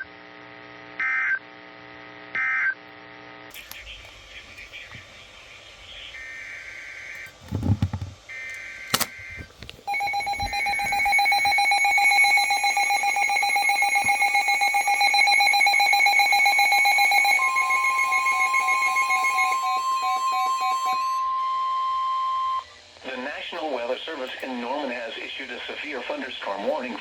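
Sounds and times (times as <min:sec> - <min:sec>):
digital data tones: 0:09.9 - 0:22.7
pulsing multi-tone alert signal: 0:09.9 - 0:22.7
steady single tone: 0:09.9 - 0:22.8.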